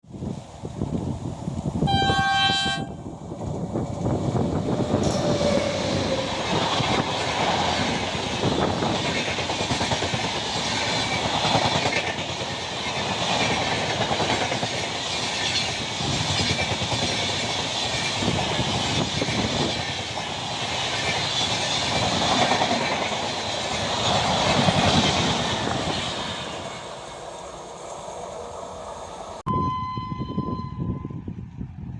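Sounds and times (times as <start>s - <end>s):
train passing with rumble: 0.1s - 29.4s
train horn blast: 1.8s - 3.0s.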